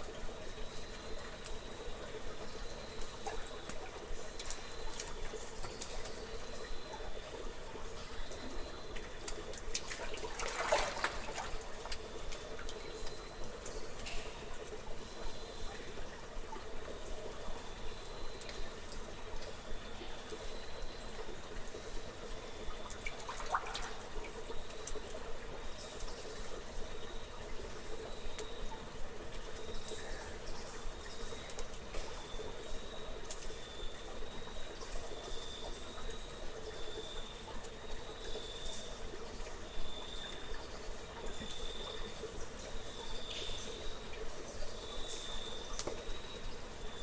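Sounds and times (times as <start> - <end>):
steady background hiss: 0.0 - 47.0
water trickling and dripping: 0.0 - 47.0.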